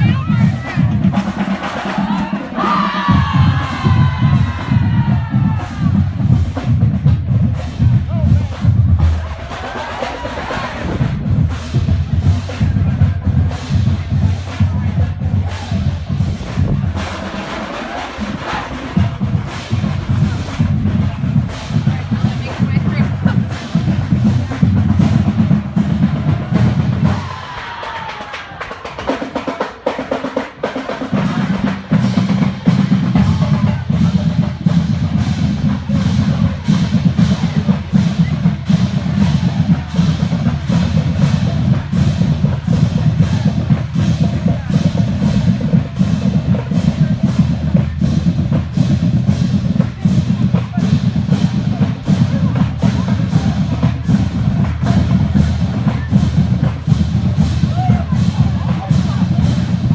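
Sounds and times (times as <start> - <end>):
low drum: 0.0 - 59.9
marching drumline cadence: 0.0 - 59.9.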